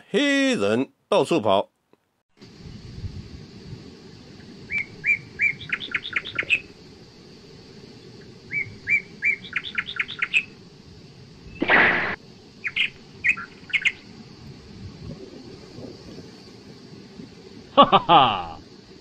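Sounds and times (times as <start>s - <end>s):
bird chirps: 4.7s - 6.7s, 8.5s - 10.6s, 11.5s - 14.0s
harsh bird call: 8.5s - 10.5s, 11.5s - 14.0s.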